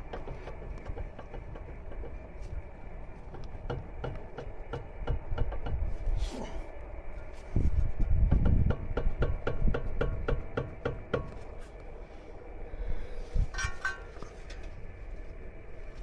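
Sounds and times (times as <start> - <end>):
rhythmic metallic clicking: 0.0 - 5.9.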